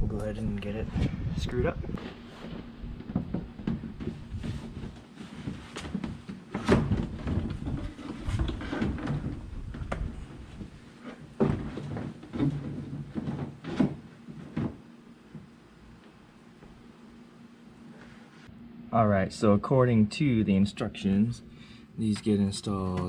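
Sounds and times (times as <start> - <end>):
plastic rubbing: 2.0 - 14.8.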